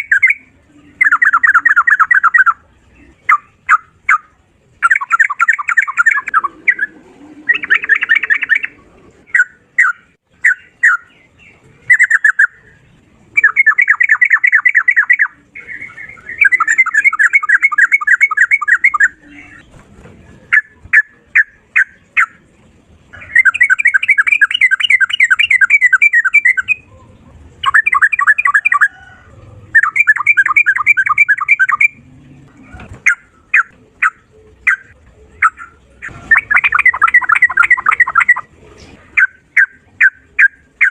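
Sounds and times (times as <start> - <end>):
bulbul singing rapid notes: 0.0 - 19.7, 20.5 - 28.9, 29.7 - 32.1, 33.0 - 40.9.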